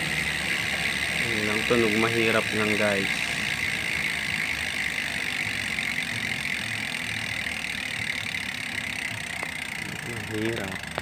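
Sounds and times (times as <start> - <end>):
bike freehub ratchet buzzing: 0.0 - 11.0.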